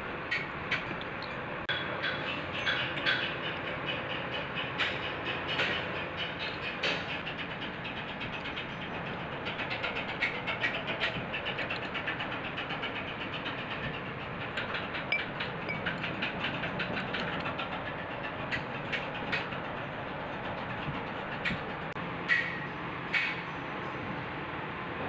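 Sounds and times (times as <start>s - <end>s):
rapid mechanical ticking: 0.3s - 22.5s.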